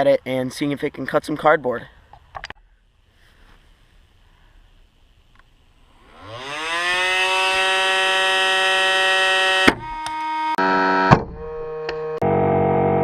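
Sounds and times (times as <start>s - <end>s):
rotary tool whining: 5.8s - 10.6s.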